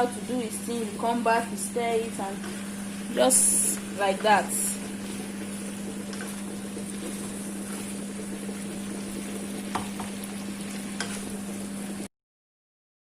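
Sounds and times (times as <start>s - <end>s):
chicken wings sizzling in a pan: 0.0s - 12.1s
steady hum: 0.0s - 12.1s
utensil clicking against pan: 6.0s - 6.5s, 10.9s - 11.3s.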